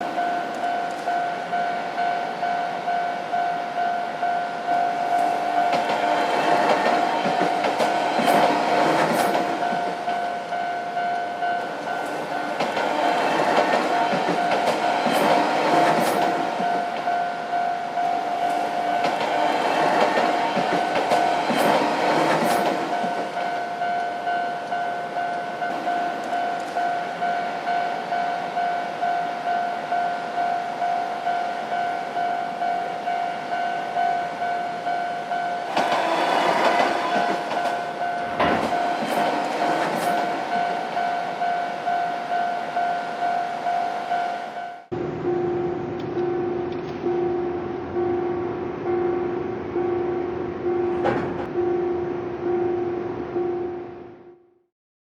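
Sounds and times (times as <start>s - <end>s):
rail joint clicking: 0.0s - 28.6s, 32.8s - 42.8s, 50.6s - 51.7s
train passing: 0.0s - 54.2s
level crossing bell ringing: 9.4s - 15.1s, 16.2s - 19.1s, 22.8s - 39.5s, 40.1s - 54.3s.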